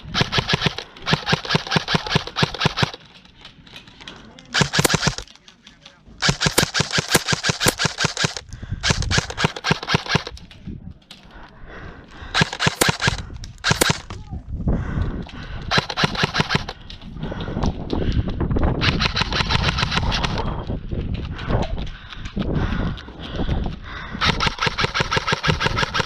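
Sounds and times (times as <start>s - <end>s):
airsoft guns firing bursts: 0.0s - 3.1s, 4.5s - 5.4s, 6.1s - 10.4s, 12.2s - 14.2s, 15.6s - 16.9s, 18.8s - 20.5s, 24.2s - 26.0s.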